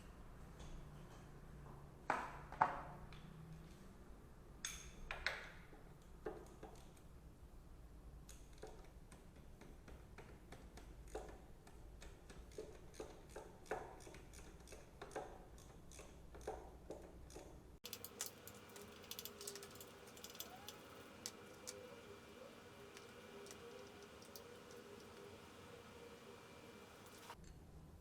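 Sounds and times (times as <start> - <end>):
quick dense ticking: 17.8 - 27.4
small tools clicking and knocking: 17.8 - 27.4
steady hum: 17.8 - 27.4.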